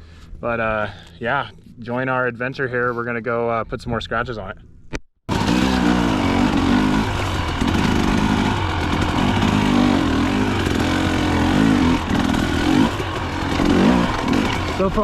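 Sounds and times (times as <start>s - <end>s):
dirt bike engine revving: 5.3s - 15.0s.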